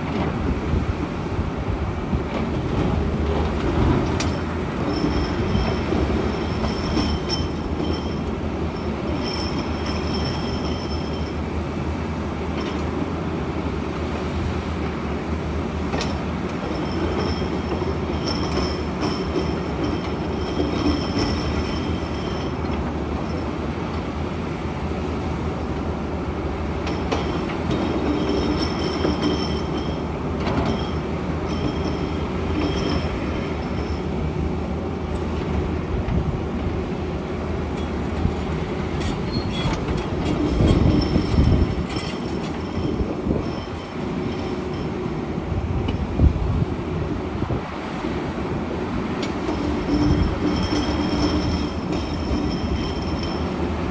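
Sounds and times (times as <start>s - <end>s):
high metallic squealing: 28.0s - 34.1s, 37.7s - 44.9s, 49.5s - 53.9s.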